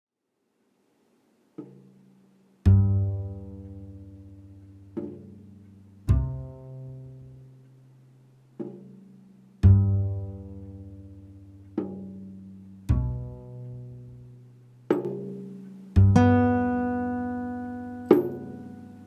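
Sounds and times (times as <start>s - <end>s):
low plucked string notes: 2.6s - 7.9s, 9.6s - 19.0s.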